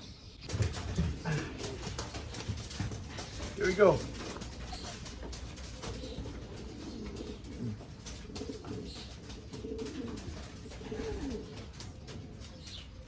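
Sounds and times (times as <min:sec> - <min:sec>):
pigeons cooing: 0:00.2 - 0:13.0.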